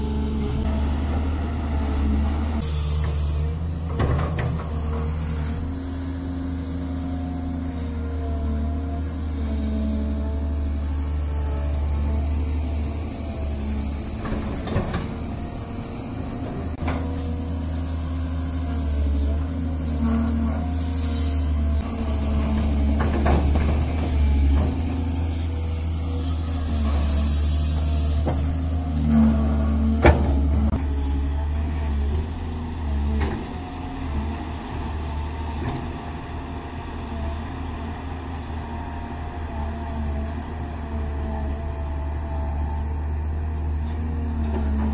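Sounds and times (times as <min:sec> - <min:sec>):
excavator engine running: 0:00.0 - 0:44.9
faint hydraulic whine: 0:02.6 - 0:33.6.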